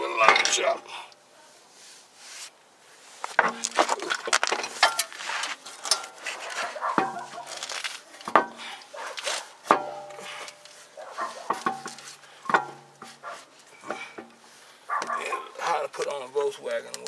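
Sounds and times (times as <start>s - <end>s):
metallic clanks and clinks: 0.2s - 0.7s, 3.4s - 8.8s, 9.7s - 14.4s.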